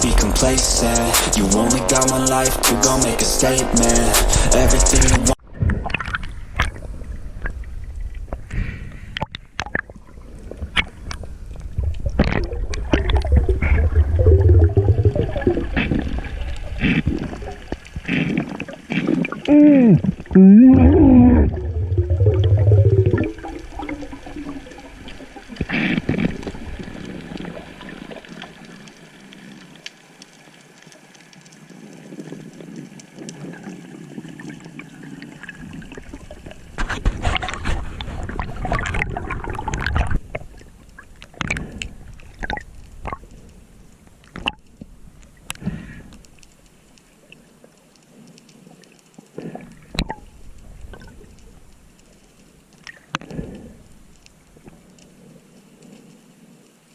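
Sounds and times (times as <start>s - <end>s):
sea water sloshing and gurgling: 5.4s - 56.9s
water splashing: 9.2s - 43.6s
low rumble: 11.6s - 16.6s, 20.3s - 25.0s.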